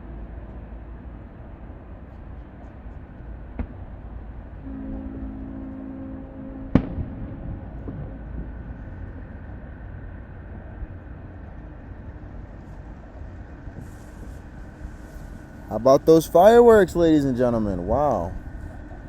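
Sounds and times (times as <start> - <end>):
low outdoor rumble: 0.0 - 19.0
low steady hum: 0.0 - 19.0
small firework pop: 3.6 - 3.8, 6.7 - 8.1
firework bang: 6.6 - 8.9.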